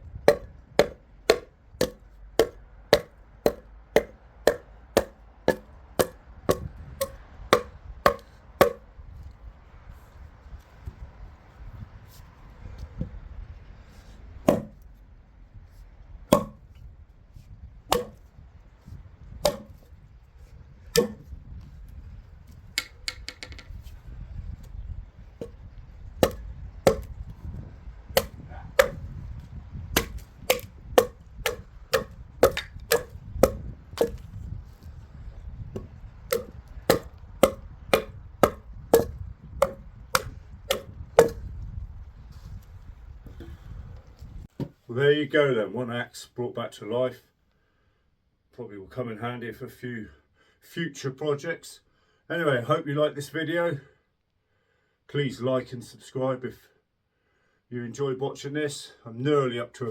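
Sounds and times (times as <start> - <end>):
axe chopping into wood: 0.3 - 8.9, 14.5 - 14.8, 16.3 - 16.6, 17.9 - 18.2, 19.4 - 19.9, 21.0 - 21.3, 26.2 - 27.2, 28.2 - 29.1, 30.0 - 34.3, 35.8 - 41.5.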